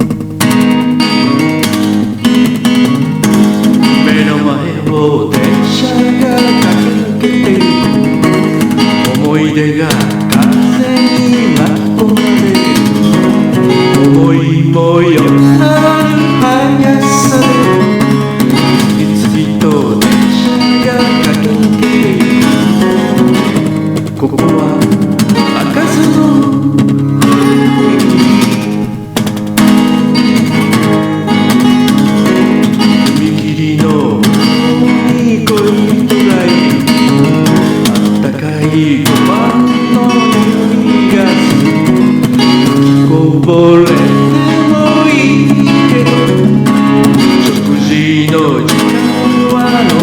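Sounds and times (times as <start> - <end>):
acoustic guitar strumming: 0.0 - 50.0.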